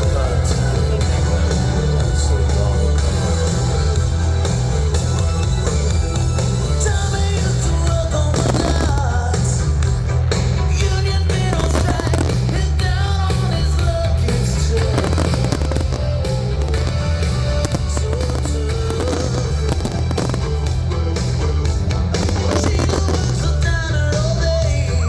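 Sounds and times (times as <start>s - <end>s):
loud music with singing: 0.0s - 25.0s
fireworks cracking and banging: 6.6s - 25.0s.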